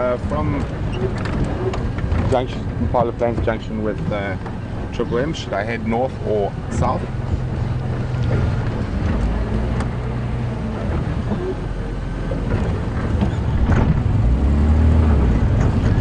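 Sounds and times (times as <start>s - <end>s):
vehicle engine rumble: 0.0s - 16.0s.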